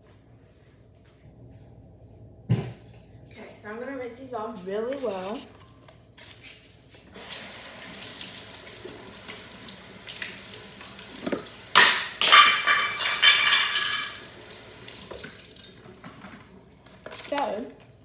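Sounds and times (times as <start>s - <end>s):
kitchen tap running: 7.1s - 16.4s.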